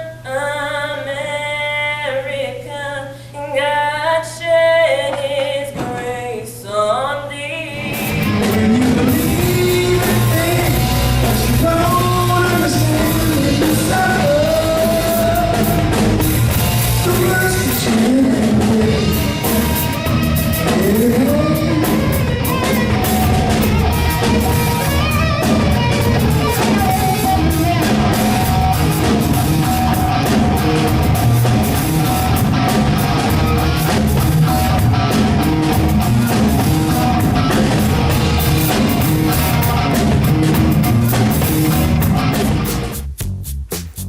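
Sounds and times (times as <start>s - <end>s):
loud band music with beat: 7.8s - 44.0s.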